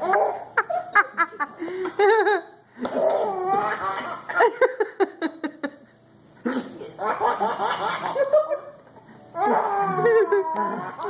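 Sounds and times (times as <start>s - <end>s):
baby giggling: 0.0s - 1.0s.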